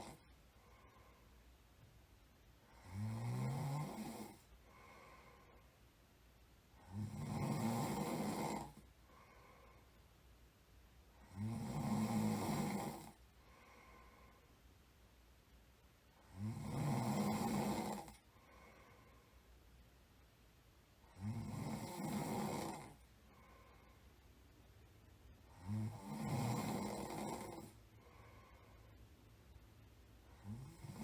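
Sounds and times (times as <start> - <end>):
person snoring: 0.0 - 1.2, 2.7 - 5.6, 6.8 - 9.8, 11.2 - 14.4, 16.2 - 19.2, 21.0 - 24.0, 25.5 - 28.8, 30.3 - 31.0
soft breath: 0.0 - 1.7, 4.3 - 6.0, 8.7 - 10.2, 13.1 - 14.8, 18.1 - 19.7, 22.9 - 24.6, 27.3 - 30.7.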